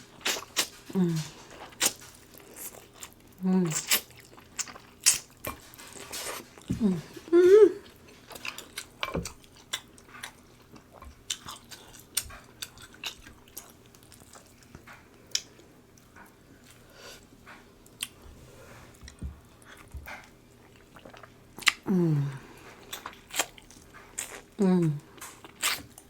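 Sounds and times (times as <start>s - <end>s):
chewing and lip smacks: 0.2s - 6.8s, 7.8s - 16.8s, 19.0s - 21.9s, 22.8s - 26.0s
person humming mmm: 0.9s - 1.4s, 6.7s - 7.9s, 21.8s - 22.5s, 24.6s - 25.1s.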